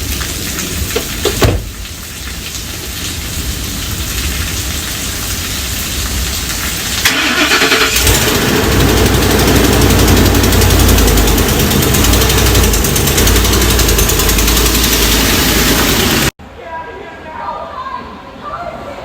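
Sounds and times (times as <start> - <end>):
rain hissing: 0.0 - 16.4
thump: 1.0 - 1.8
truck engine starting and idling: 7.0 - 16.4.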